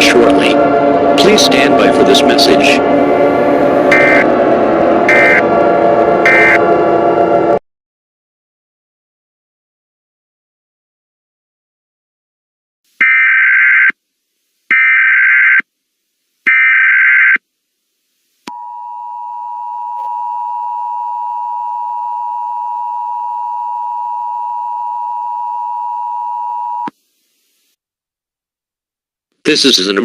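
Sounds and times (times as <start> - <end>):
two-tone attention signal: 2.9 - 5.5, 6.2 - 6.8, 18.5 - 26.9.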